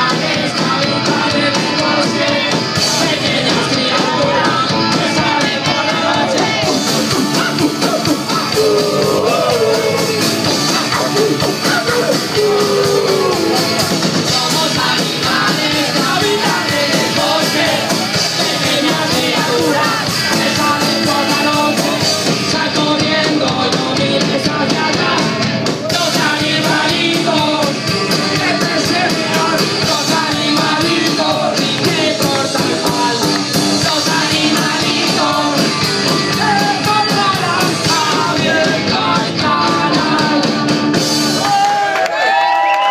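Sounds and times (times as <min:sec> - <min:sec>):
rock song with singing: 0:00.0 - 0:42.9.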